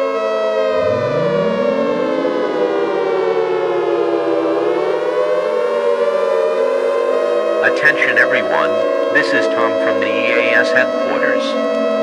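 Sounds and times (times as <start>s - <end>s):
steady siren tone: 0.0s - 12.0s
siren winding up: 0.6s - 3.6s.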